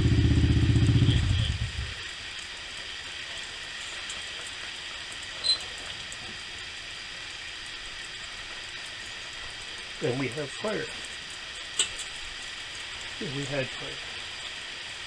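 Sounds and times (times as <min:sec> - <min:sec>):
heater igniter buzzing: 0:00.0 - 0:02.7
faint steady hiss: 0:07.3 - 0:15.0.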